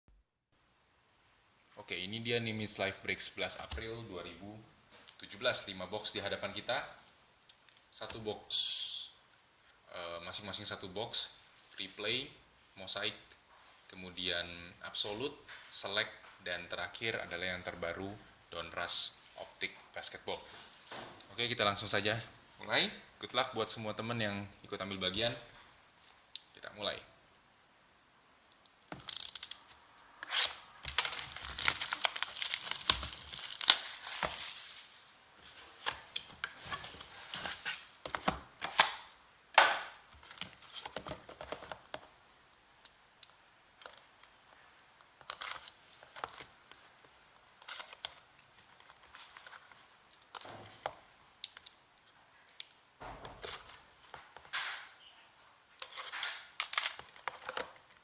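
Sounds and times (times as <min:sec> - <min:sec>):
plastic shrink-wrap tearing: 0:29.0 - 0:35.1
wrapper crinkles and rustles: 0:29.0 - 0:38.0, 0:55.8 - 0:58.0.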